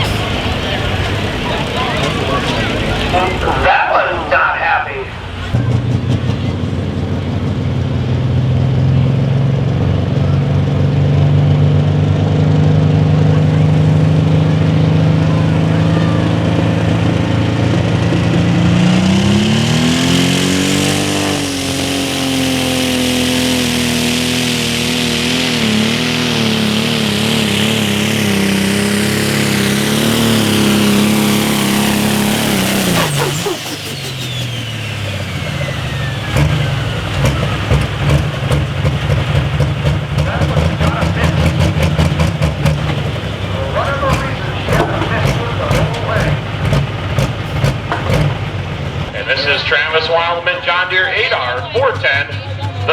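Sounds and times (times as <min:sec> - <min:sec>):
diesel engine revving hard: 0:00.0 - 0:52.9
turbo whine: 0:13.5 - 0:52.9.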